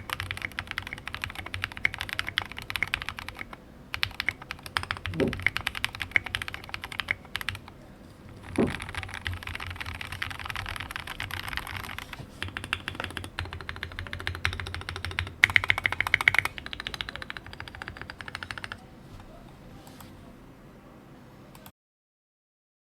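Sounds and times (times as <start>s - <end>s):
fast mechanical keyboard typing: 0.0s - 7.7s, 8.4s - 18.8s.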